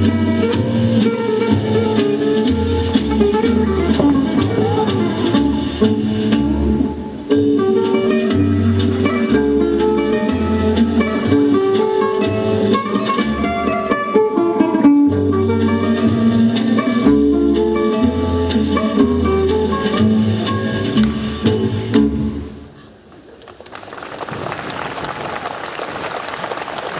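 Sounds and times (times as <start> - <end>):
bass line: 0.0 - 7.6
plucked guitar: 0.0 - 22.5.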